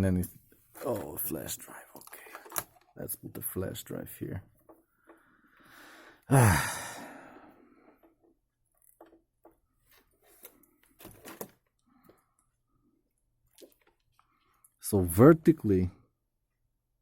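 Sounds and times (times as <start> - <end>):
plastic parts clicking: 1.9 - 3.0
man sighing loudly: 5.8 - 7.9.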